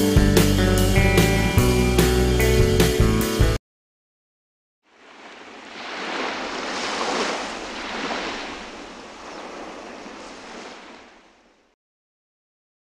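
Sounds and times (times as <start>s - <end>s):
water washing like small waves: 4.9s - 11.8s.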